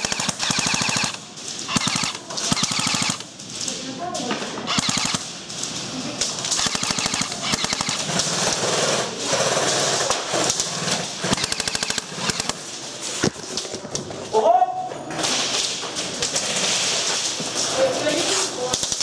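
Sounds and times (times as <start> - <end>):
airsoft guns firing bursts: 0.0 - 3.4, 4.7 - 5.5, 6.4 - 12.7.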